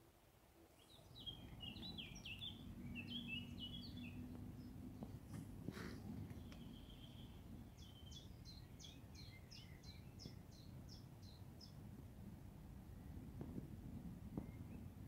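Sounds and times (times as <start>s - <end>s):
songbird singing faintly: 0.0s - 15.0s
low outdoor rumble: 0.1s - 15.0s.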